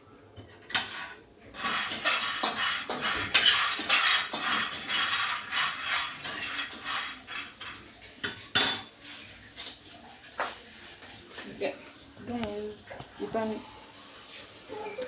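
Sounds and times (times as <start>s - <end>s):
utensils and dishes clattering: 0.3s - 10.7s.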